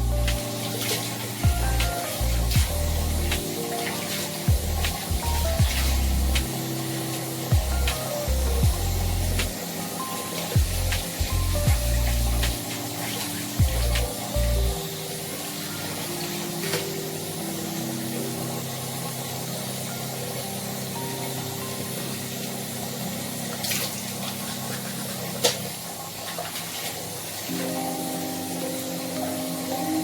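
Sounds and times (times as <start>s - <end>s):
rushing hiss: 0.0s - 26.2s
soft sustained music: 0.0s - 30.0s.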